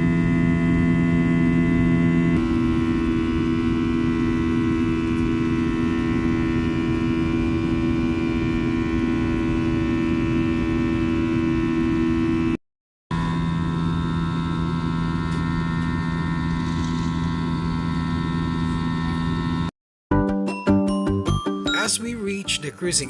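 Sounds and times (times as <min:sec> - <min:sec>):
jet engine and airflow drone: 0:00.0 - 0:12.6
multi-tone hum: 0:00.0 - 0:19.7.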